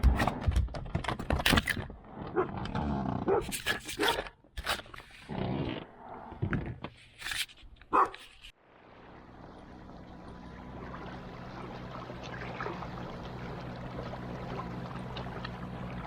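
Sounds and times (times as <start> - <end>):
dog yelping and barking: 7.9 - 8.2
motor humming: 8.9 - 16.0.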